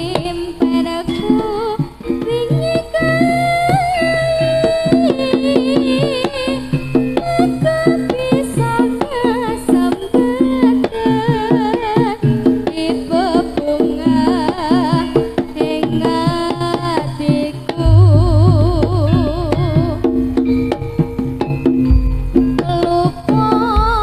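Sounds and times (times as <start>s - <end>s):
fast hand-drum strokes: 0.0s - 24.0s
repeating pitched percussion: 17.8s - 22.6s
wavering melody with vibrato: 17.8s - 23.0s.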